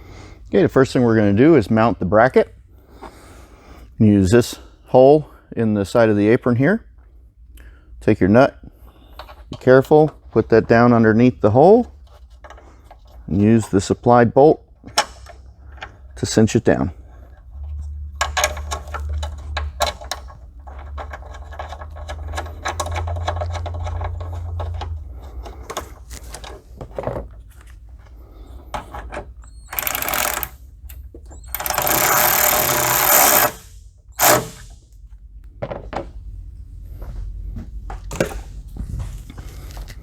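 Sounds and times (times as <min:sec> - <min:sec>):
clicks and handling knocks: 0:17.3 - 0:34.7, 0:35.4 - 0:36.3
cordless driver running: 0:29.7 - 0:30.6, 0:31.5 - 0:34.7.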